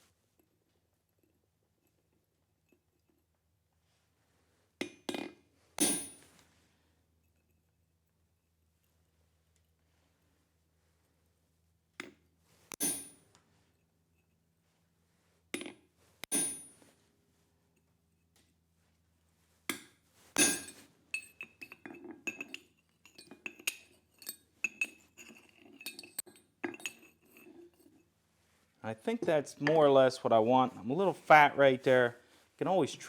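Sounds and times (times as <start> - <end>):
hammer striking steel on anvil: 16.3 - 16.7, 20.4 - 21.3.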